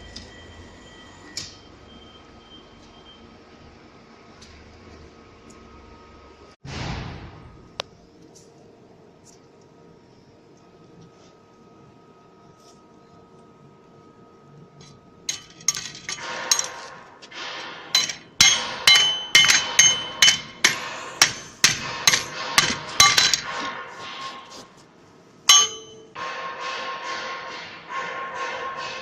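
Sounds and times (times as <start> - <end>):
hammer striking steel plate: 15.3 - 24.6, 25.5 - 29.0.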